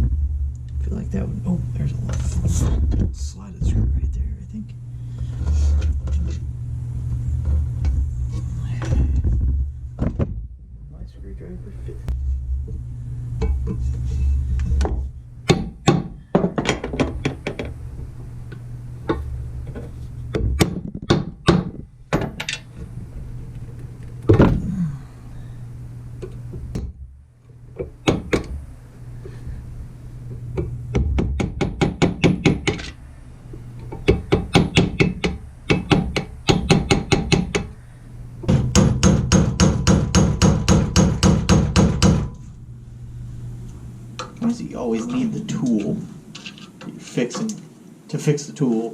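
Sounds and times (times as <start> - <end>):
hammer strikes on metal: 15.5 - 16.7, 30.6 - 32.8, 34.0 - 37.7, 38.5 - 42.4.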